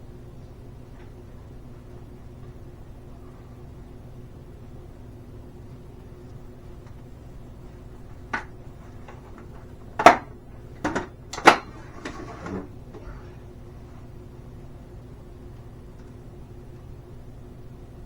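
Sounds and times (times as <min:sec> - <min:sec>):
faint steady hum: 0:00.0 - 0:18.0
hard objects knocking and clattering: 0:08.3 - 0:12.7.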